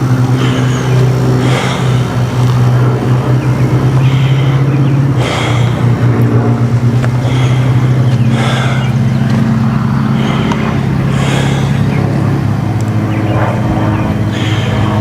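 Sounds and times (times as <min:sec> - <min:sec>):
engine running with low hum: 0:00.0 - 0:15.0.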